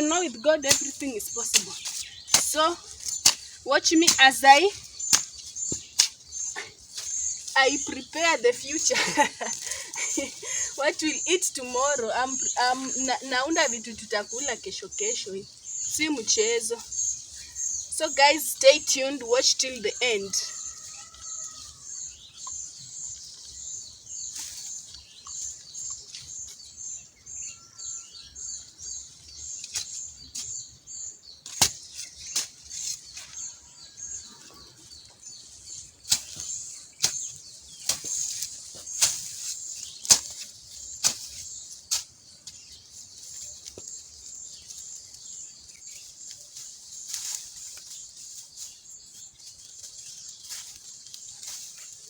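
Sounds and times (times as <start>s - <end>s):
insects chirring: 0.0s - 28.0s
digging tool striking soil: 0.6s - 6.3s, 31.4s - 33.2s, 36.1s - 42.1s.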